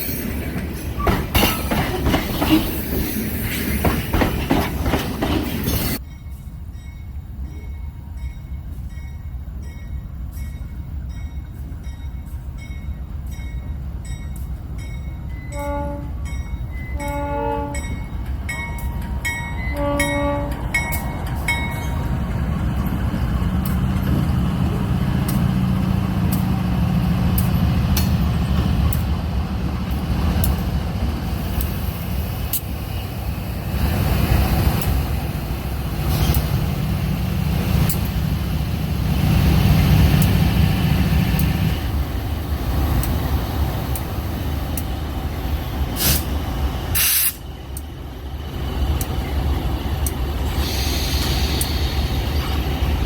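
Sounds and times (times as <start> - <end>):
diesel locomotive engine running: 7.3 - 53.0
air hissing: 45.8 - 47.5, 50.4 - 52.5.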